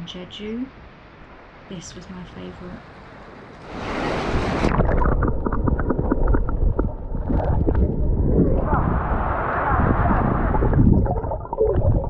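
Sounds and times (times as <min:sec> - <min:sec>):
sea water sloshing and splashing: 0:03.7 - 0:12.0
wind buffeting microphone: 0:03.7 - 0:12.0.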